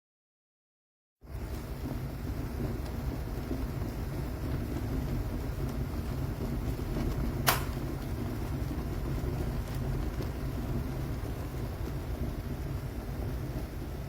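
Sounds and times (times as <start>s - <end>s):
electric kettle rumbling: 1.2s - 14.0s
kettle sharp click: 7.4s - 7.8s.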